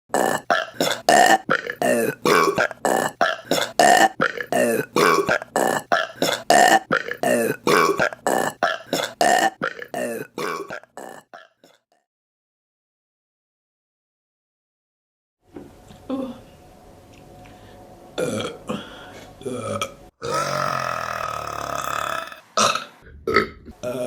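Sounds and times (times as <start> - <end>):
short burps: 19.4 - 24.0.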